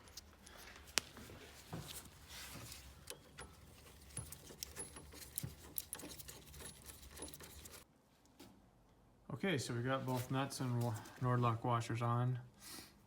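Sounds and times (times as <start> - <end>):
small metal parts clinking: 2.7 - 7.8.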